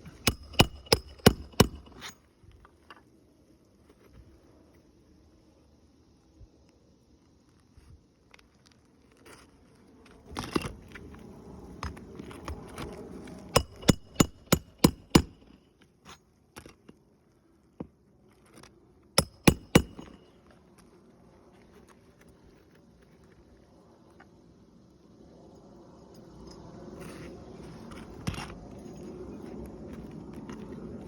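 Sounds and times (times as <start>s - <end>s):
hammer striking nails: 0.2s - 2.1s, 13.6s - 15.5s, 19.2s - 20.2s.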